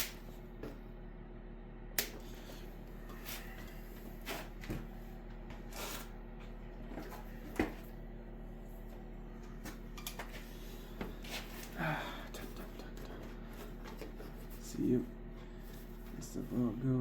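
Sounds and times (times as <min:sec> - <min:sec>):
low steady hum: 0:00.0 - 0:17.0
cutters snipping wires: 0:02.0 - 0:02.4.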